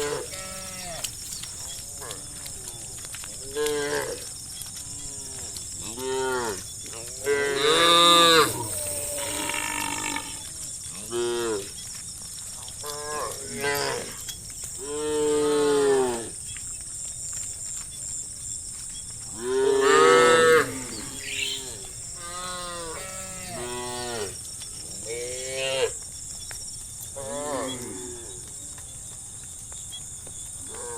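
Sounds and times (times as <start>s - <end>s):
cows mooing: 0.0s - 1.4s, 19.4s - 24.4s.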